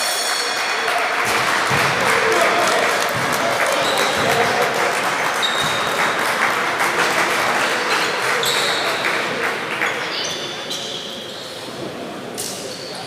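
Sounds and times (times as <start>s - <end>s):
crowd chatter: 0.0s - 13.0s
sneakers squeaking on court: 5.4s - 6.0s.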